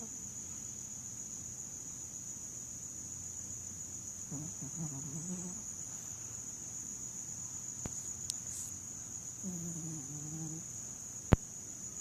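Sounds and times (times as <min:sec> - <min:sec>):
woman snoring: 0:04.3 - 0:05.6, 0:09.4 - 0:10.7.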